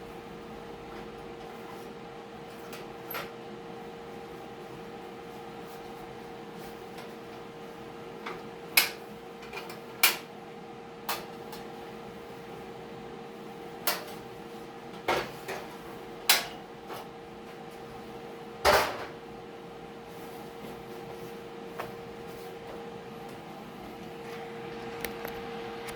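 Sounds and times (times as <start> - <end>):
steady hum: 0.0 - 25.9.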